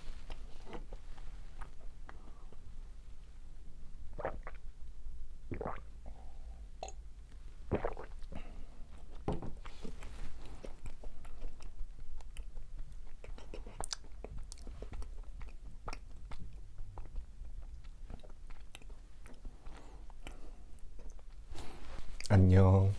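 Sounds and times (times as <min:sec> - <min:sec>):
chewing crunchy macarons: 0:09.9 - 0:21.7.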